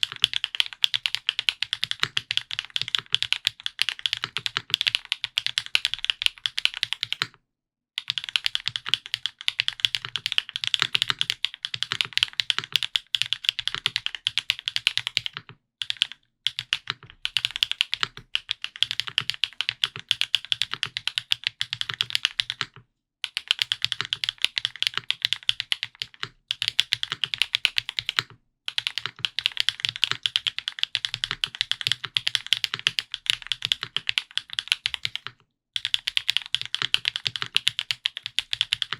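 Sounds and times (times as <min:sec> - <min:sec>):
rapid mechanical keyboard typing: 0:00.0 - 0:07.3, 0:08.0 - 0:38.9.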